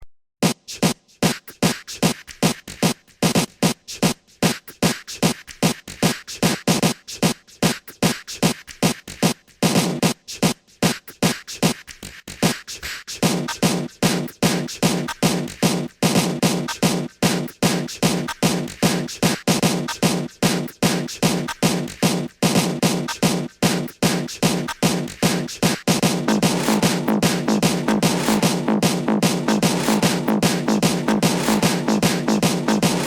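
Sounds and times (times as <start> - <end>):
hardstyle electronic music: 13.2 - 33.0.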